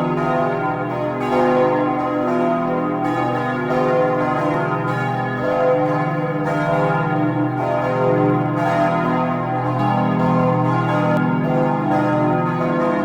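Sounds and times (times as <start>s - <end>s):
church bells ringing: 0.0s - 13.0s.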